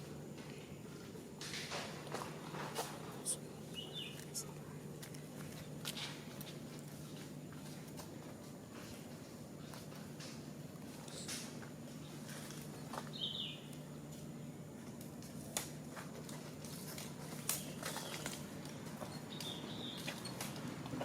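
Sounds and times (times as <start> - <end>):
low steady hum: 0.0 - 21.0
clicks and rustles: 14.9 - 21.0.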